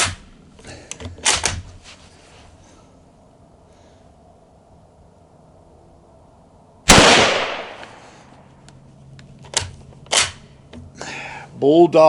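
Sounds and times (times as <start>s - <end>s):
rifle shot: 6.9s - 8.2s.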